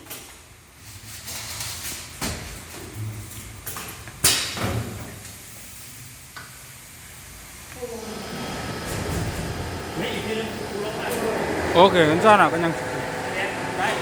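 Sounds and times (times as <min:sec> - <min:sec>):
low steady machine hum: 0:07.1 - 0:14.0.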